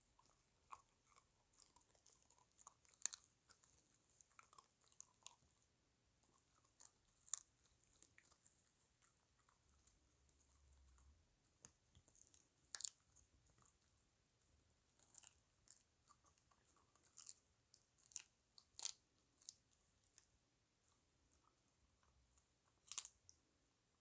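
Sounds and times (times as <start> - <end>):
puppy chewing crunches: 0.1 - 5.6, 6.2 - 11.2, 14.9 - 19.6, 22.7 - 23.3.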